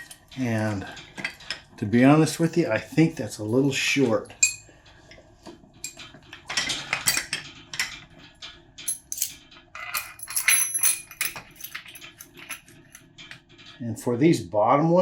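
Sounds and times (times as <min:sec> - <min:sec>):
metal bolts clinking and rattling: 0:08.8 - 0:13.0.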